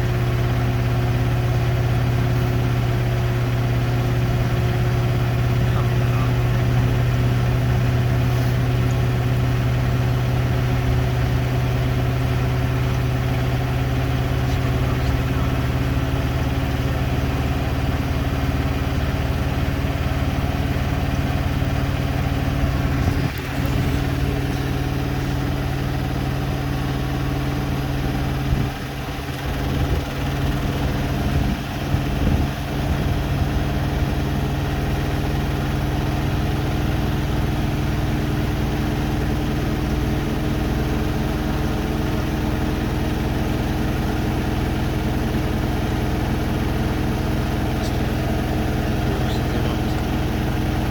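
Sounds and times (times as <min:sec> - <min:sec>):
washing machine hum: 0:00.0 - 0:50.9.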